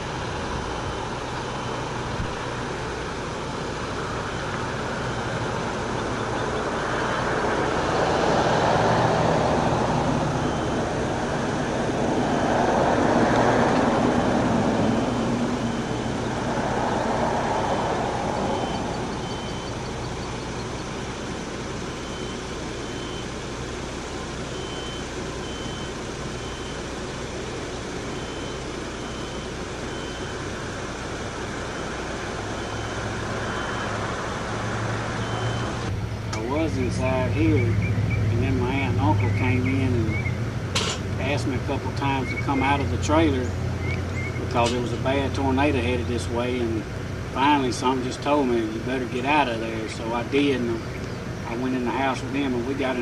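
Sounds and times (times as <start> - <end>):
vehicles passing: 0.0 - 53.0
reversing alarm beeping: 10.0 - 11.1, 14.1 - 16.5, 18.4 - 40.3.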